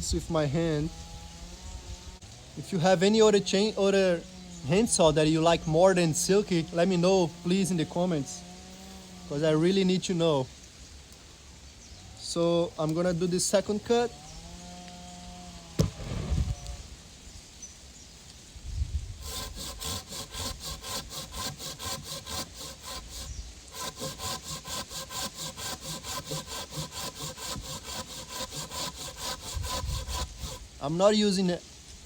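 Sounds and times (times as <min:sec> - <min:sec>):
handsaw cutting through log: 0:00.5 - 0:09.9, 0:12.9 - 0:16.9, 0:19.2 - 0:31.1
thump: 0:15.8 - 0:16.6.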